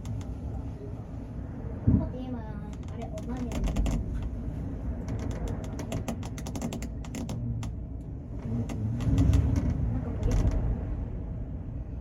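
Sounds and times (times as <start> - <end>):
sharp clicks and creaks: 0.0 - 0.5, 2.6 - 4.4, 5.0 - 10.7
ferry low rumble: 0.0 - 12.0.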